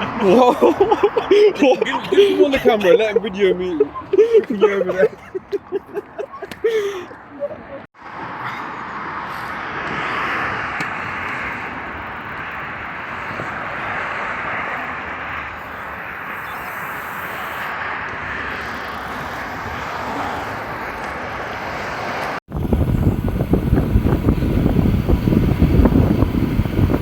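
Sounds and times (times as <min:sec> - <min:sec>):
bicycle road noise: 0:00.0 - 0:27.0
rushing wind: 0:00.0 - 0:27.0.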